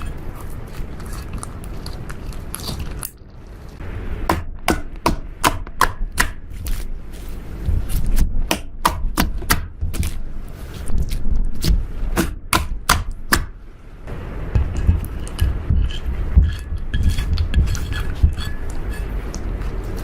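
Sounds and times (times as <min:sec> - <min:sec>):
low handling rumble: 0:13.6 - 0:20.0.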